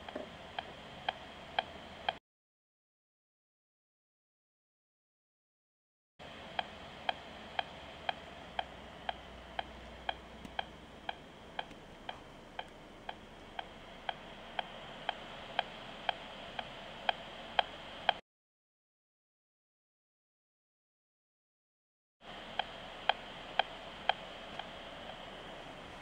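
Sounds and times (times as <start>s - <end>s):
steady hiss: 0.0s - 2.2s, 6.2s - 18.2s, 22.2s - 26.0s
sharp regular ticking: 6.4s - 18.2s.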